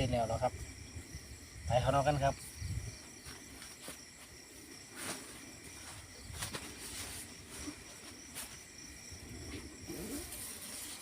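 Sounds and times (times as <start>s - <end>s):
crickets trilling: 0.0s - 11.0s.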